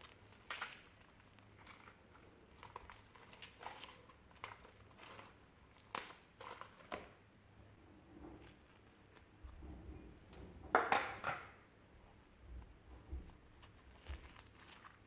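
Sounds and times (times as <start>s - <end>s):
sticky slime squelches: 0.0s - 7.2s, 12.1s - 15.0s.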